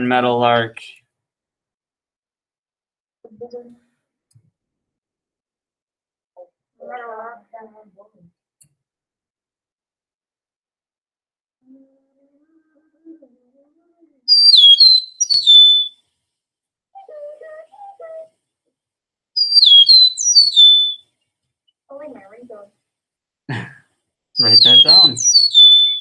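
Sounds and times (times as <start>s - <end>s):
meadowlark whistled song: 14.3s - 16.0s, 19.4s - 21.0s, 24.4s - 26.0s.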